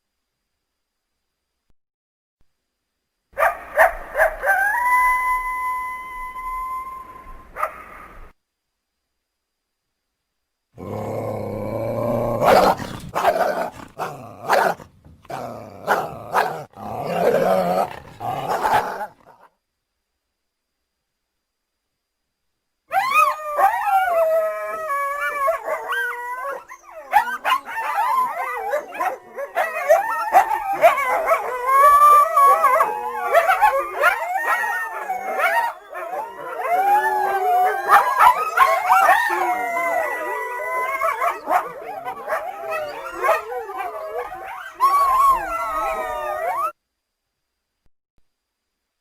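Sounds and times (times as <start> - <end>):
coyotes howling: 3.4 - 8.1, 10.8 - 19.4, 22.9 - 46.8.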